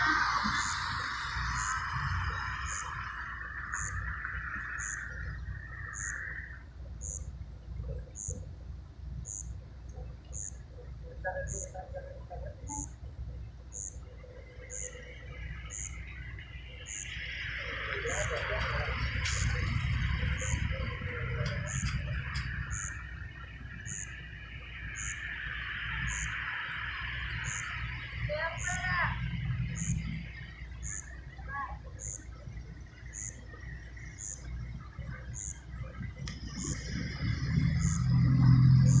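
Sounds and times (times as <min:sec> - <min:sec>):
steady low rumble: 0:00.0 - 0:39.0
buzzing chorus: 0:10.3 - 0:39.0.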